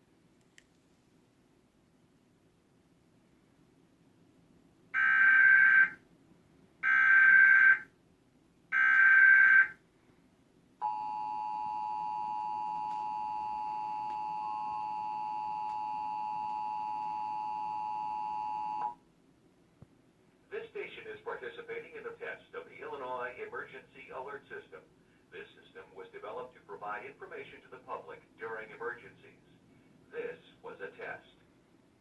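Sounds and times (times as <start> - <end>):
two-tone attention signal: 10.8 - 18.9.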